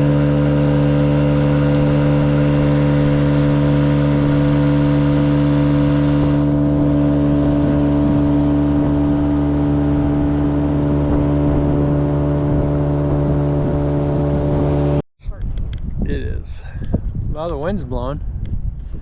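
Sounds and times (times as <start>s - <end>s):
outboard motor running: 0.0s - 15.0s.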